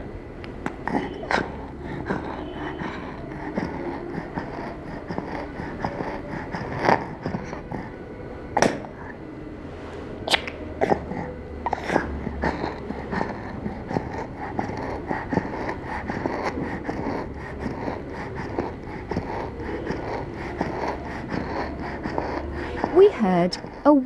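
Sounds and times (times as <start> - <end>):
child wheezing: 0.8 - 7.7, 10.8 - 13.5.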